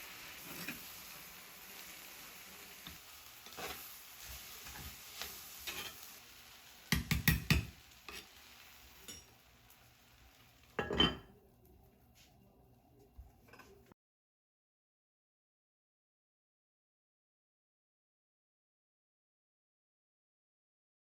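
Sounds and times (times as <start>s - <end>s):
food sizzling in a frying pan: 0.0s - 11.4s
utensil scraping pan: 0.4s - 0.9s, 2.8s - 6.2s, 7.5s - 8.4s.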